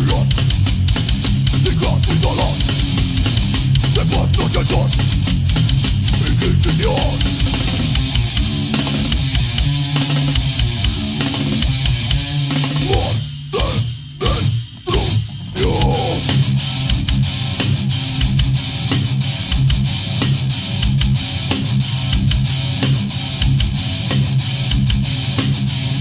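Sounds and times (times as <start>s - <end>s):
distorted electric guitar riff: 0.0s - 26.0s
drum kit: 0.0s - 26.0s.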